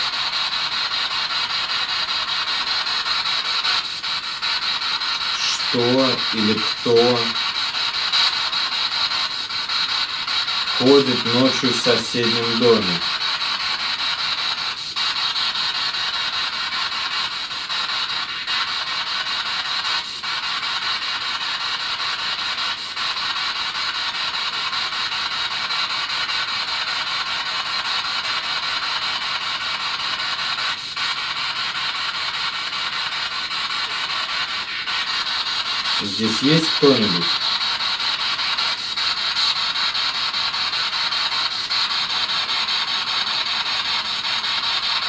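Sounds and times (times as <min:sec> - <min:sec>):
radio static hiss: 0:05.3 - 0:07.5, 0:10.7 - 0:13.1, 0:36.0 - 0:37.5.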